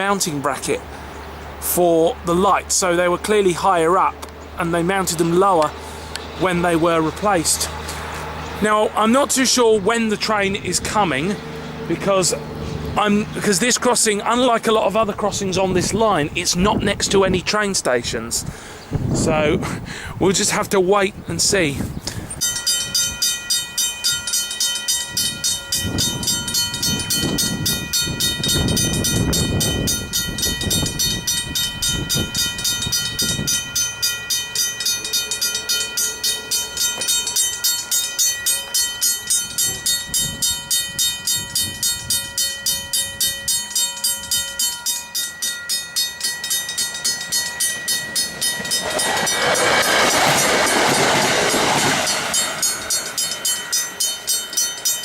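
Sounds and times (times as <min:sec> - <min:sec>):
low gusty rumbling: 0:00.0 - 0:23.5, 0:25.0 - 0:44.8, 0:46.9 - 0:54.6
train passing: 0:00.0 - 0:55.0
level-crossing bell ringing: 0:22.4 - 0:55.0.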